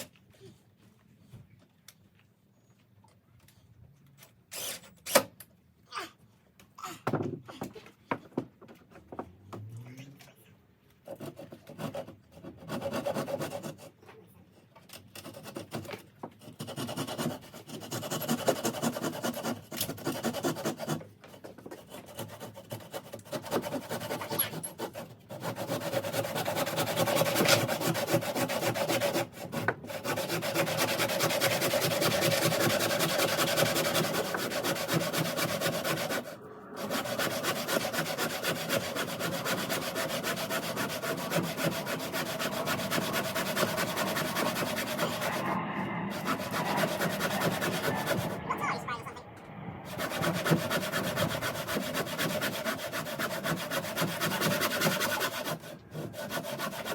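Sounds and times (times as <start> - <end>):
hand saw cutting timber: 11.0 - 48.9, 49.9 - 56.9.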